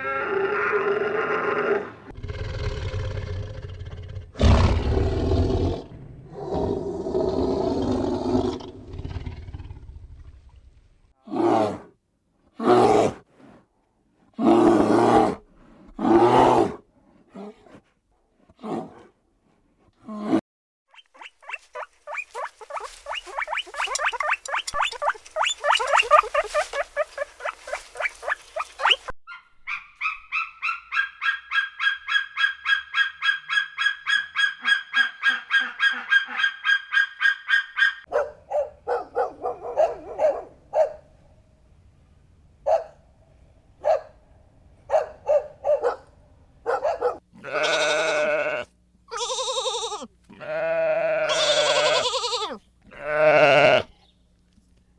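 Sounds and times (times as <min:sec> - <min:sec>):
rapid pulsing animal calls: 0:21.0 - 0:29.1, 0:47.6 - 0:50.1, 0:51.3 - 0:52.6
short animal calls: 0:21.0 - 0:29.1, 0:47.4 - 0:54.0
long wavering animal calls: 0:47.4 - 0:53.9.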